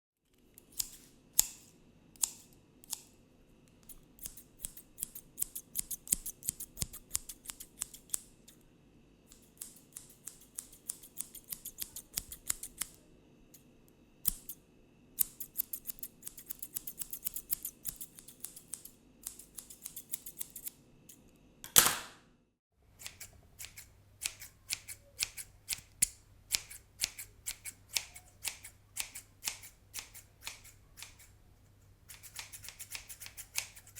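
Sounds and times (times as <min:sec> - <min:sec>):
scissors snipping: 0:00.6 - 0:03.1, 0:03.8 - 0:08.3, 0:09.3 - 0:13.0, 0:15.2 - 0:21.2, 0:23.0 - 0:31.3, 0:32.1 - 0:33.9.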